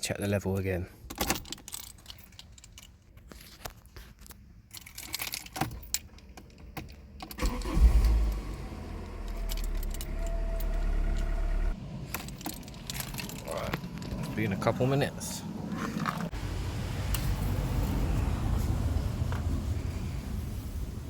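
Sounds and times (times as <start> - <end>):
keys jangling in ignition: 1.1 - 3.2, 4.6 - 14.6
car engine starting and idling: 6.0 - 21.0.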